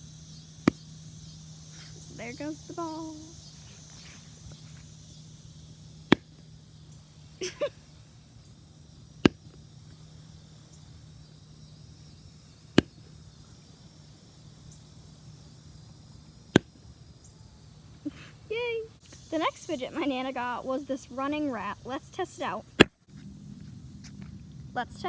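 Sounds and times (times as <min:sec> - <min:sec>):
fidget toy snapping: 0:00.7 - 0:00.9, 0:06.1 - 0:06.4, 0:12.8 - 0:13.1, 0:16.5 - 0:16.8.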